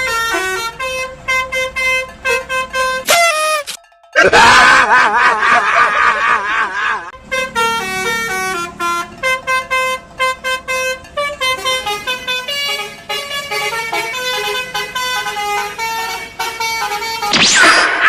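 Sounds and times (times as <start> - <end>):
bus horn playing melody: 0.0 - 3.8, 7.1 - 17.4.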